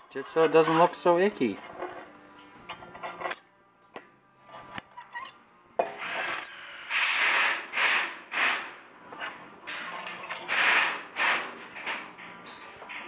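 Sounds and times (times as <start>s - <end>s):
scraping strokes across glass: 0.2s - 2.0s.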